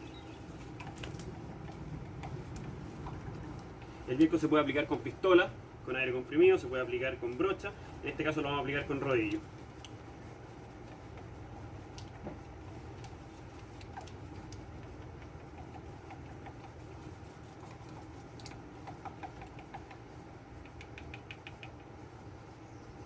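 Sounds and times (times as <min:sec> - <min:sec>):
low hum: 0:00.0 - 0:05.9
stirring ticks and scrapes: 0:00.1 - 0:23.0
quick clicks: 0:17.8 - 0:22.0.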